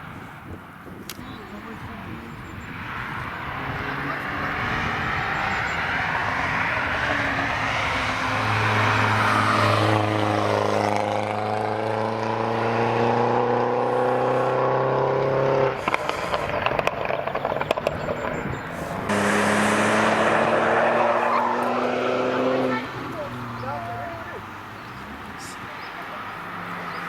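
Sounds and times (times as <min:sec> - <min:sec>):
car engine accelerating past: 0:02.7 - 0:27.0.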